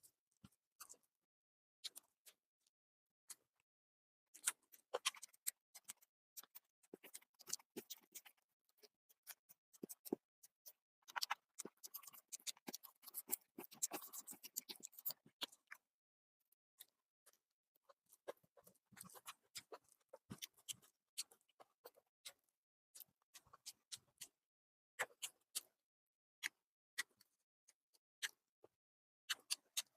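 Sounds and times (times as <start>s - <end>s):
close chewing sounds: 4.3s - 15.9s, 16.8s - 24.4s, 25.0s - 25.8s, 28.2s - 29.9s.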